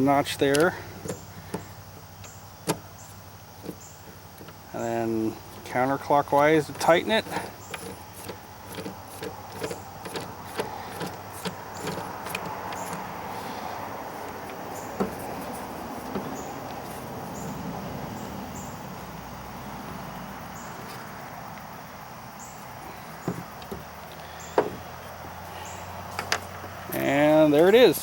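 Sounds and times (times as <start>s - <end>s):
steady background noise: 0.0s - 28.0s
light clicks and knocks of handling: 0.2s - 17.6s, 22.5s - 27.8s.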